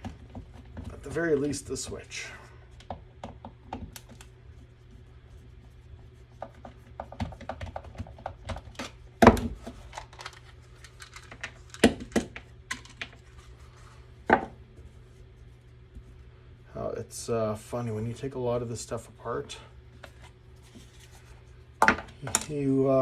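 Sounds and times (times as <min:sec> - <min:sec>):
clicks and scrapes of handled parts: 0:06.6 - 0:13.9.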